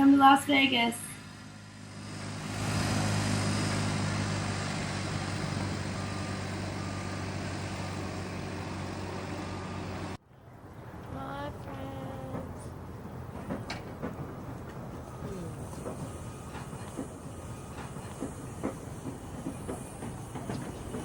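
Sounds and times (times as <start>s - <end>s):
heavy machinery engine running: 0.0s - 10.2s.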